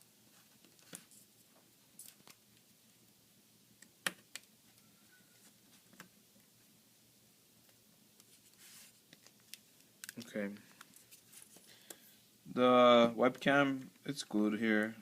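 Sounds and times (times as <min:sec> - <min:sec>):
plastic laptop parts clicking: 0:09.1 - 0:10.3.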